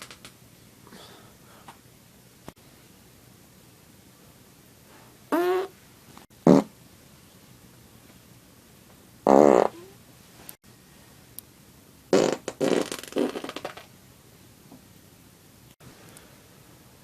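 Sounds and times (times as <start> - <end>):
person farting: 5.3 - 5.8, 6.4 - 6.7, 9.2 - 10.0, 12.1 - 13.9.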